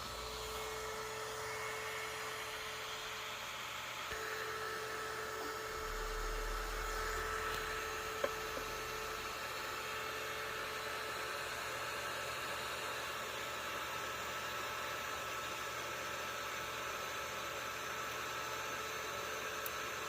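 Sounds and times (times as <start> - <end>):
steady hum: 0.0 - 12.3.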